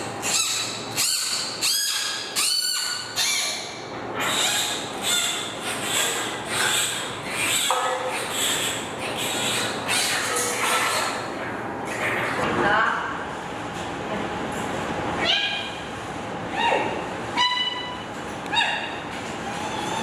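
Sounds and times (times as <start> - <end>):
giant panda squealing: 19.4 - 20.0.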